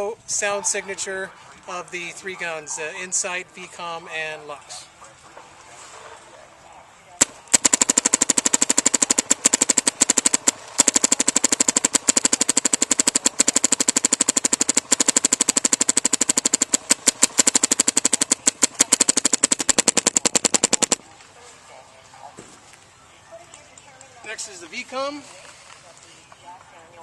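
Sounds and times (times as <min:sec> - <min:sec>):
paintball marker firing rapidly: 0:07.2 - 0:21.0.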